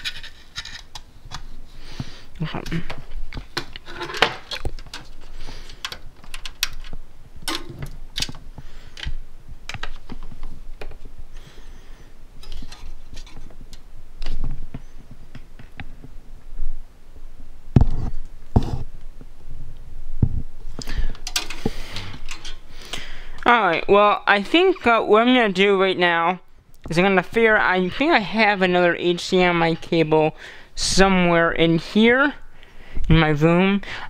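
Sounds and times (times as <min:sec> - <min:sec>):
cable plugs clicking and knocking: 0:02.4 - 0:11.1, 0:20.8 - 0:23.8.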